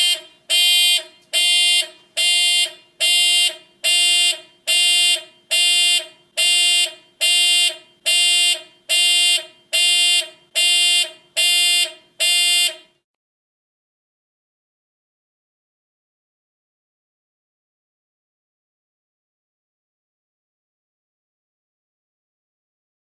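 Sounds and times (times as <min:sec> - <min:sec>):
alarm beeping: 0:00.0 - 0:12.9.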